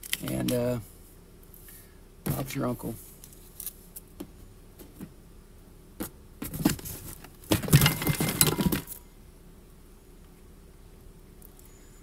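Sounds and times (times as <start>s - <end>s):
rustling and crinkling: 1.5s - 5.2s, 6.0s - 9.0s.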